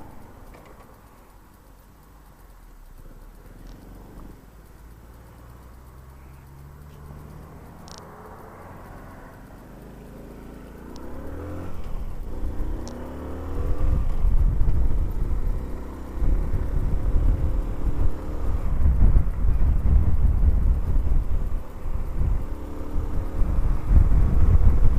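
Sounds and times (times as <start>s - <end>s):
motorcycle engine accelerating: 0.0s - 24.9s
wind buffeting microphone: 10.9s - 24.9s.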